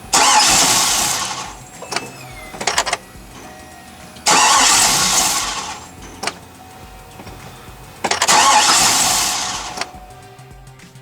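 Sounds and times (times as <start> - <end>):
engine cranking without starting: 0.0 - 11.0
starter click: 0.0 - 11.0.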